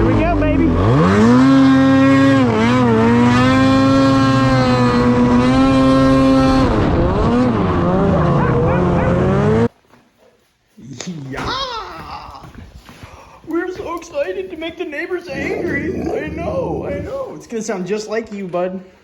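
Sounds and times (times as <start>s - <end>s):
snowmobile engine revving: 0.1s - 9.7s.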